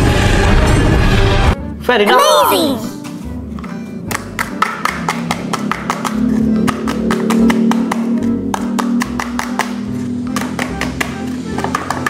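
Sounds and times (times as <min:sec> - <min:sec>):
quick tapping beat: 0:04.0 - 0:12.0.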